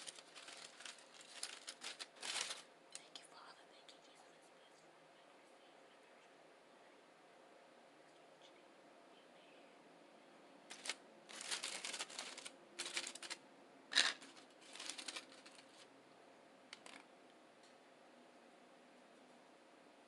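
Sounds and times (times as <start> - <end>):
crisp crackling eating sounds: 0.0 - 3.2, 10.7 - 15.9.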